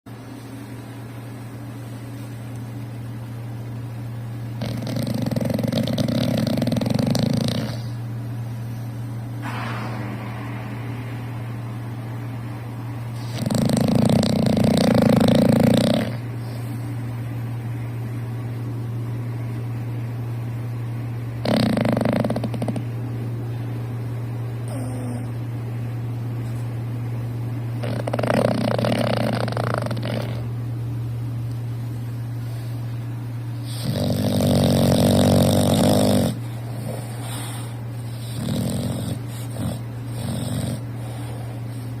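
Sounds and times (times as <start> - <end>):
steady low hum: 0.1 - 42.0
dog snoring loudly: 4.6 - 8.0, 13.2 - 16.8, 21.4 - 22.9, 24.6 - 25.4, 27.8 - 30.5, 33.6 - 42.0.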